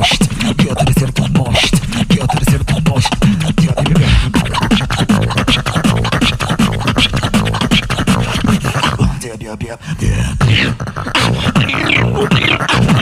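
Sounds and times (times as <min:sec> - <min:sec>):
beatboxing: 0:00.0 - 0:13.0.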